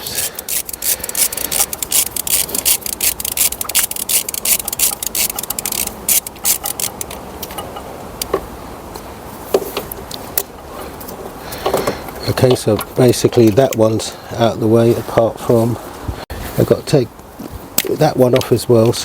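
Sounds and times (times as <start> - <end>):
ratchet wrench clicking: 0.0 - 7.2.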